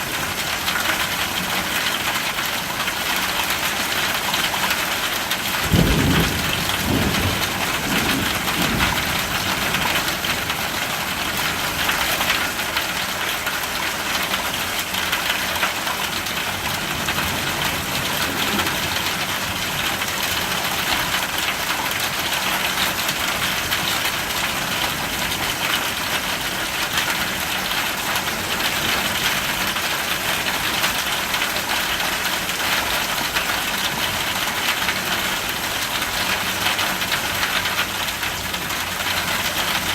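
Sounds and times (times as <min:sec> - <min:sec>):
heavy rain falling: 0:00.0 - 0:39.9
low thunder rumble: 0:05.6 - 0:10.6.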